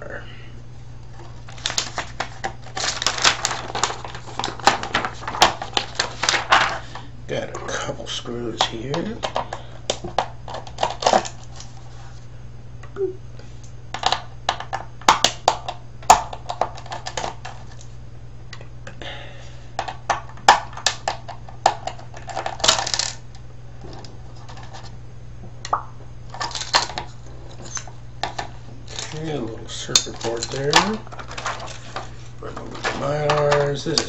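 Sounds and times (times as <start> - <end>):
steady low hum: 0.0 - 34.0
rattle of parts: 1.2 - 7.0, 16.4 - 17.8, 19.8 - 23.2, 26.3 - 34.0.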